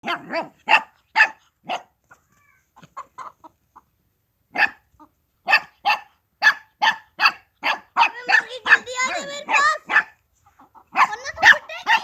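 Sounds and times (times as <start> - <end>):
dog barking: 0.0 - 2.0, 4.5 - 10.2, 10.9 - 12.0
hen squawking: 8.0 - 12.0.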